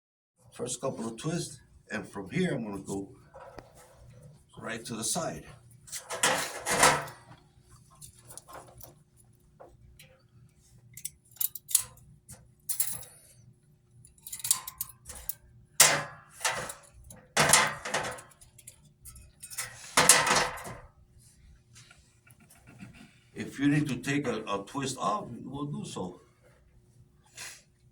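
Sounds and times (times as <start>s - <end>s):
wire rustling and scraping: 3.3s - 4.4s, 5.9s - 9.0s, 14.2s - 15.4s, 16.3s - 20.8s
metal wire clinking: 5.9s - 7.3s, 7.9s - 9.0s, 10.9s - 12.1s, 12.7s - 13.3s, 14.0s - 20.8s.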